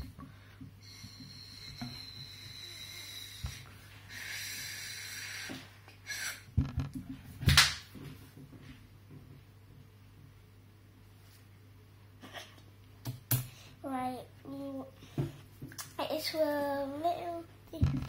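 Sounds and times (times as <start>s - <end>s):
air hissing into slime: 0.8s - 6.5s.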